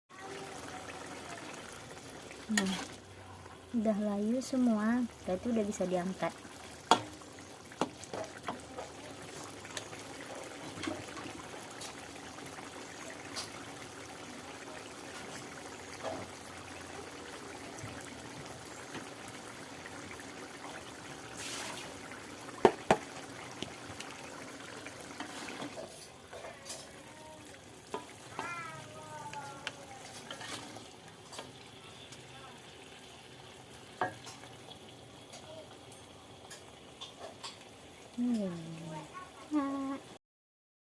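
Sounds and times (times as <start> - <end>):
vegetables sizzling in a wok: 0.1 - 40.2.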